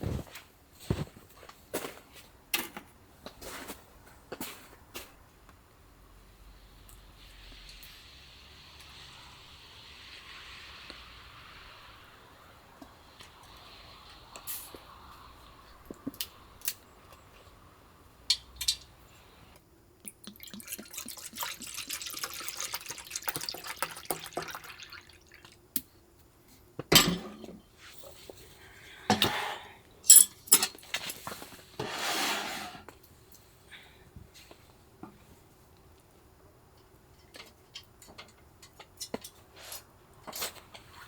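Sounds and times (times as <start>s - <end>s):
liquid pouring: 20.0s - 25.6s
dishes clinking and knocking: 26.9s - 27.6s.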